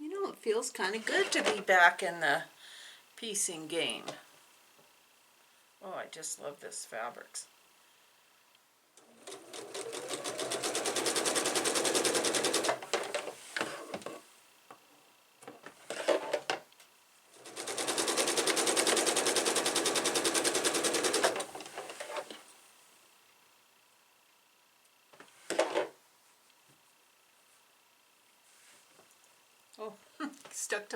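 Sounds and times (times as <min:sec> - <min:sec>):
sewing machine stitching: 0:09.0 - 0:14.2, 0:17.3 - 0:22.4.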